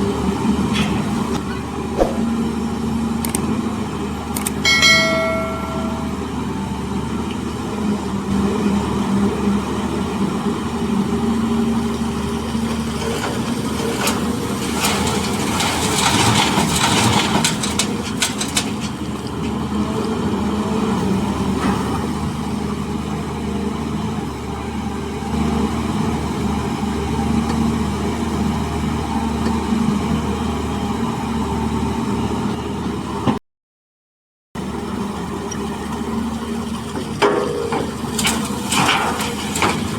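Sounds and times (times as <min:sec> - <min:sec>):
heavy diesel machinery running: 0:00.0 - 0:33.3, 0:34.6 - 0:39.9.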